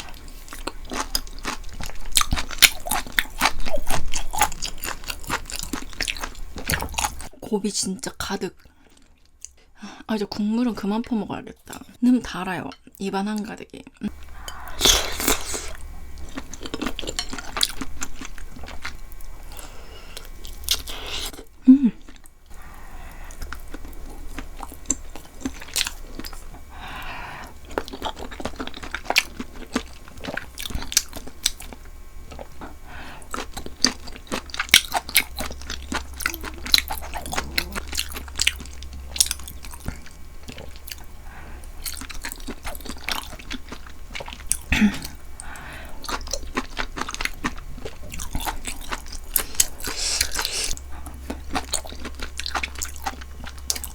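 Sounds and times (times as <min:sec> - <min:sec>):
close chewing with wet smacks: 0:00.1 - 0:07.3, 0:14.1 - 0:19.3, 0:27.6 - 0:53.9.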